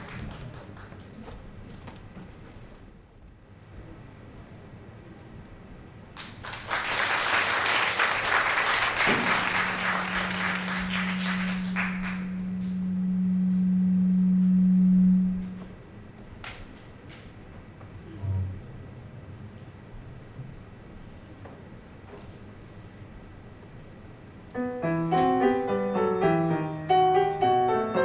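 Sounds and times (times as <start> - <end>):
audience applauding: 0.0 - 1.0, 6.2 - 12.4
steady low tone: 8.6 - 16.3.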